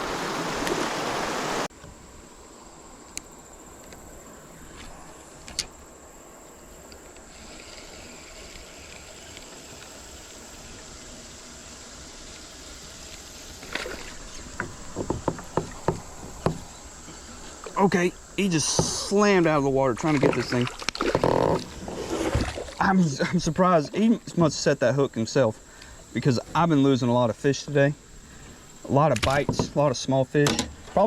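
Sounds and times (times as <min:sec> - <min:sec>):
rushing creek water: 0:00.0 - 0:31.0
clicks and knocks: 0:14.5 - 0:16.7.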